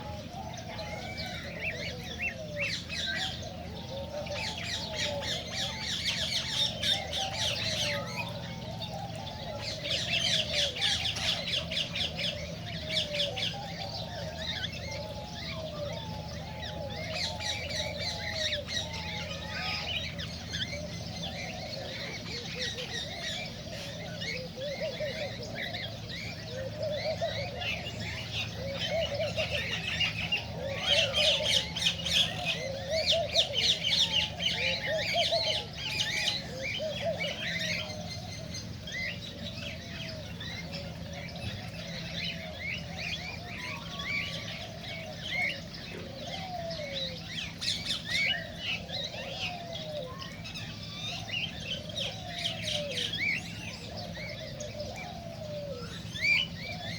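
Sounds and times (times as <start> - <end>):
cockatiels chirping and calling: 0.0 - 56.9
steady low hum: 0.0 - 56.9.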